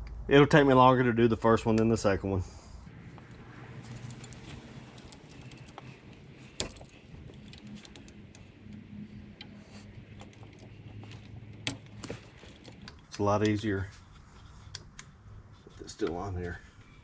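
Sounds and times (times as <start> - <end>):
low steady hum: 2.8 - 12.9
hand tools clinking on metal: 3.0 - 12.9.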